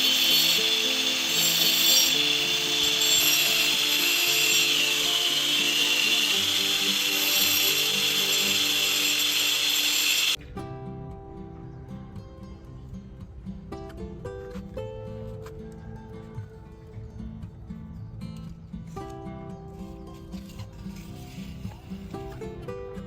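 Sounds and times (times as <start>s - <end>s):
power tool cutting bamboo: 0.0s - 10.4s
background music: 0.0s - 23.0s.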